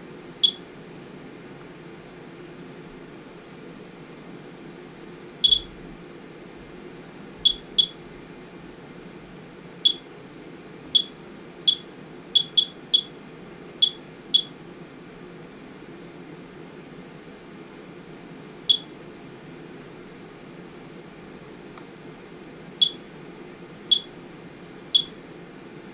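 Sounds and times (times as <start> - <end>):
steady low hum: 0.0 - 25.9
geiger counter beeps: 0.4 - 0.6, 5.4 - 5.7, 7.4 - 8.0, 9.8 - 10.0, 11.0 - 13.1, 13.8 - 14.5, 18.7 - 18.9, 22.8 - 23.1, 23.9 - 24.1, 25.0 - 25.2.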